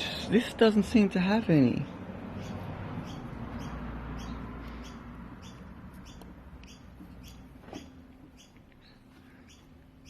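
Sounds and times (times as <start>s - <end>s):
small bird chirping: 2.3s - 10.0s.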